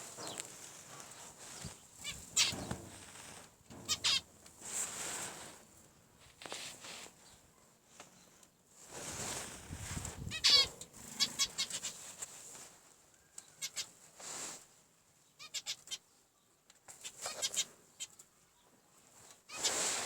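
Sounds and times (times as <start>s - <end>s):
finches calling: 2.0s - 2.8s, 3.9s - 4.2s.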